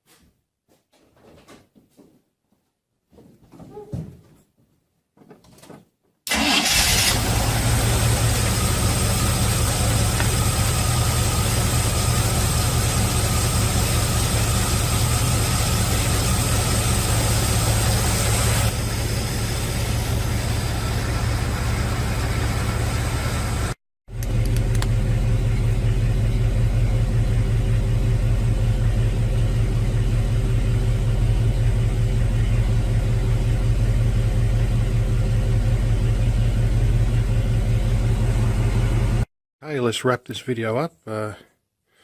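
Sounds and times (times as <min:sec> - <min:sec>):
engine cranking: 0:06.3 - 0:07.9
engine idling: 0:06.3 - 0:39.3.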